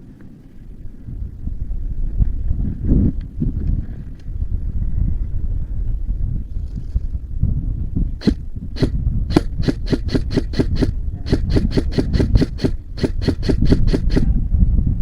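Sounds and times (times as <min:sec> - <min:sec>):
wind rumble on microphone: 0:00.0 - 0:15.0
airsoft gun shots: 0:08.2 - 0:14.3.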